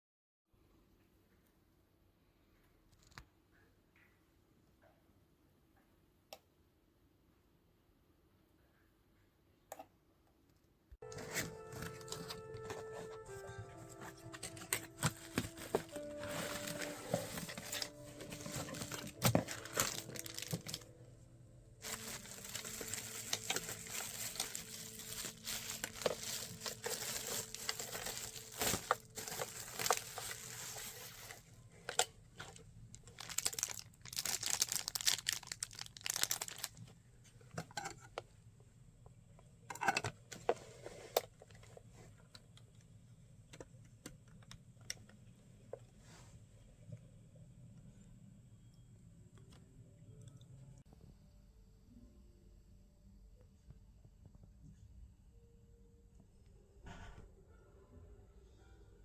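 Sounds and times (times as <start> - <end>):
crinkling and rustling: 11.0 - 21.1, 21.8 - 38.3, 39.7 - 42.7.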